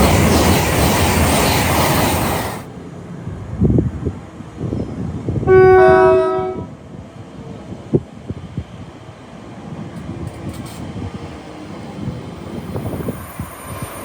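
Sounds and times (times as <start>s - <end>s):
train rail noise: 0.0s - 14.0s
two-tone train horn blast: 5.5s - 6.8s.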